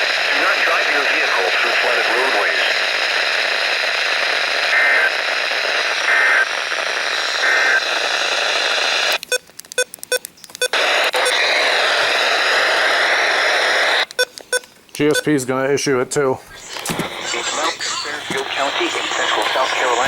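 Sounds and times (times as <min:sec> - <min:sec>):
radio static: 0:00.0 - 0:09.2, 0:10.7 - 0:14.2, 0:16.6 - 0:20.0
two-tone data bursts: 0:04.7 - 0:15.4.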